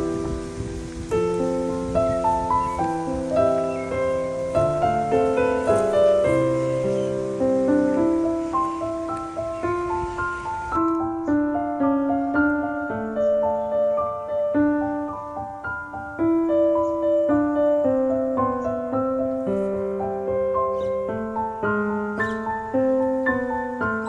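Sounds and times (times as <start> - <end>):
gentle piano music: 0.0 - 24.0
soft hiss: 0.0 - 24.0.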